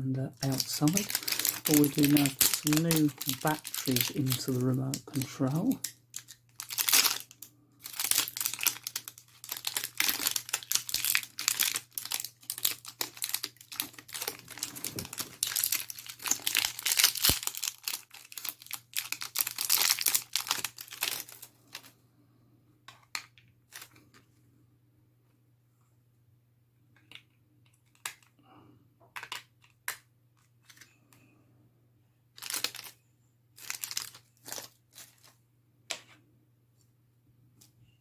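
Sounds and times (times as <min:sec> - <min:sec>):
packaging crinkling and tearing: 0:00.4 - 0:21.9, 0:32.4 - 0:33.0, 0:33.6 - 0:35.4.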